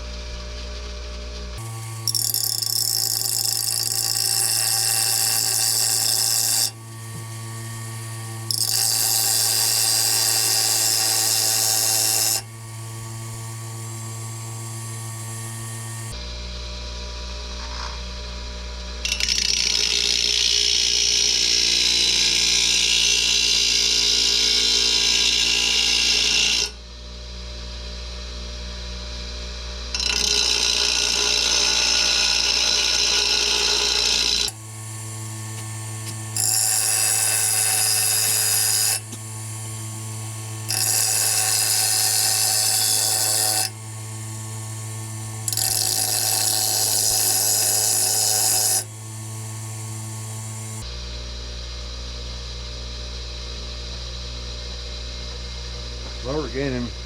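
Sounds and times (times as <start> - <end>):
electric grinder motor humming: 0.0 - 26.8, 29.8 - 50.9
grinding wheel grinding metal: 1.6 - 16.2, 19.0 - 26.8, 29.9 - 50.8.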